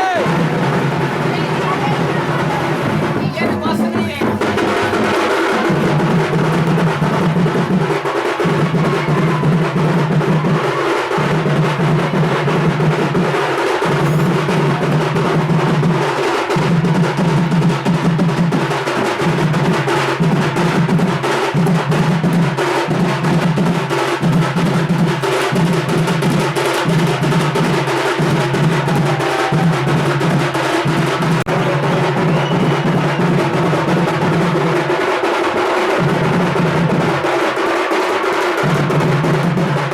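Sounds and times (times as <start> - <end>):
loud music with steady drumming: 0.0 - 39.9.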